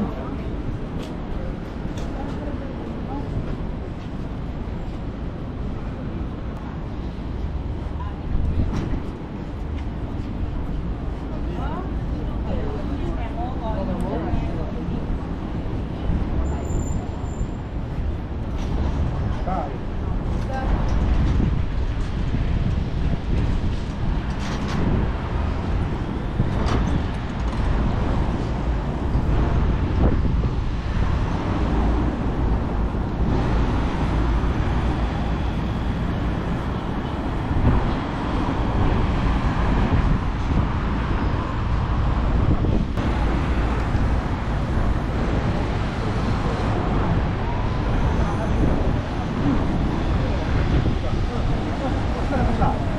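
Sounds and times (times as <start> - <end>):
passing road traffic: 0.0 - 52.9
wind rumbling on microphone: 0.0 - 52.9.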